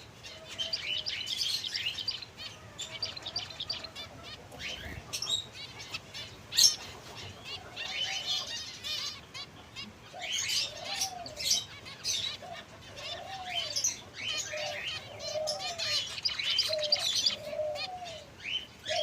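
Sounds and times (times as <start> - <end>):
finches chirping: 0.0 - 19.0
low rising and falling bird call: 7.5 - 19.0.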